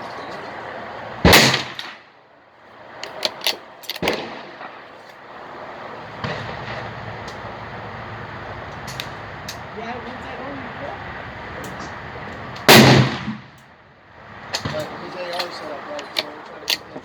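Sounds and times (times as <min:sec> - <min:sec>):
rifle shot crack: 0:01.2 - 0:02.0, 0:03.4 - 0:04.9, 0:12.6 - 0:13.6
sharp rifle clicks: 0:03.0 - 0:04.7, 0:14.6 - 0:17.0.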